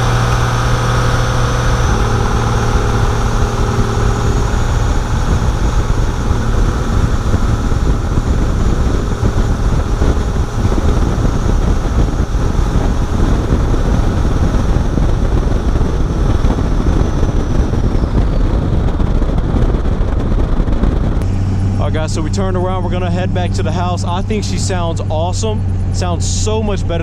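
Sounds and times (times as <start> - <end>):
high turbo whistle: 0.0 - 18.5
diesel engine running: 0.0 - 27.0.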